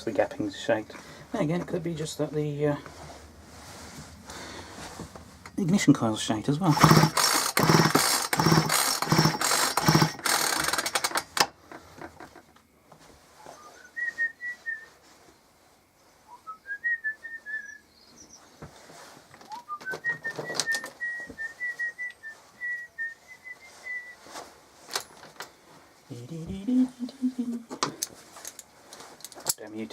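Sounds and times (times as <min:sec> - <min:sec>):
rhythmic rasping noise: 0:06.6 - 0:11.2
man whistling a tune: 0:13.5 - 0:14.9, 0:16.3 - 0:17.9, 0:19.5 - 0:24.2.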